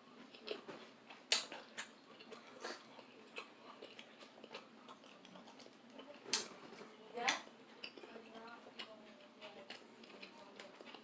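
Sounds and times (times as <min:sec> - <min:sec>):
close chewing and mouth sounds: 0:00.0 - 0:11.0
sharp clicks and smacks: 0:01.2 - 0:02.0.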